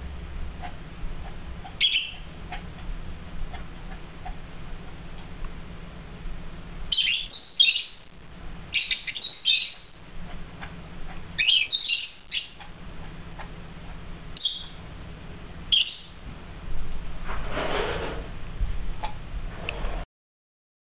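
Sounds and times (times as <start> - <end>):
faint low hum: 0.0 - 20.0
lovebirds chirping: 1.6 - 2.9, 6.9 - 14.9, 15.7 - 16.2.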